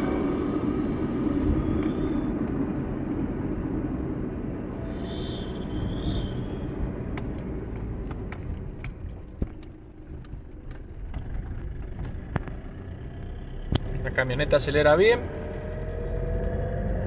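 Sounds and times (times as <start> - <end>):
diesel engine rumble from cab: 0.0 - 17.0
thin high whistle: 4.9 - 6.7
light metallic clicks and jingles: 7.1 - 12.6.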